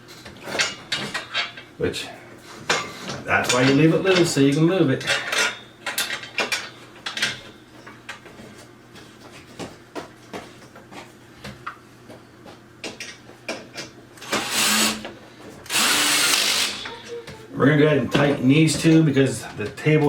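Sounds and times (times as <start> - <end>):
loud grinding: 14.2 - 15.0, 15.7 - 17.0.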